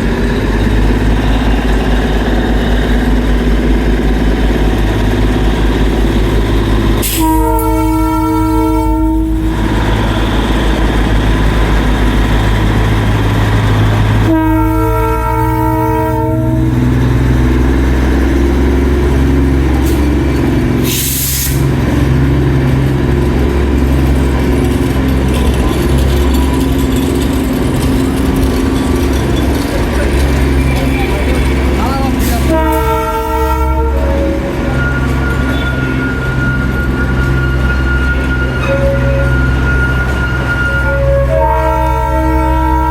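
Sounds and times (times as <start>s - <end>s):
locomotive engine running: 0.0s - 42.9s
train horn blasts: 7.0s - 11.0s, 14.2s - 16.9s, 31.7s - 42.9s.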